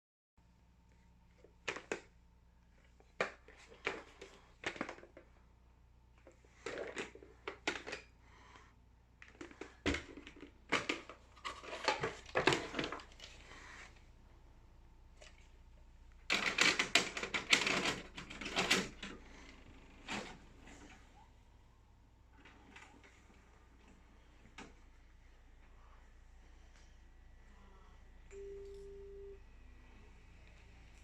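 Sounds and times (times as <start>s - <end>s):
low electrical hum: 0.4s - 31.0s
rustling and crinkling: 9.2s - 14.1s.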